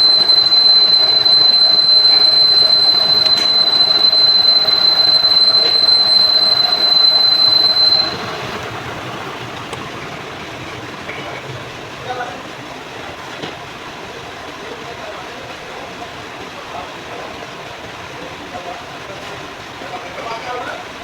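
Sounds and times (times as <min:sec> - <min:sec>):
machine tool cutting steel: 0:00.0 - 0:08.4
high-pitched squeal: 0:00.0 - 0:08.6.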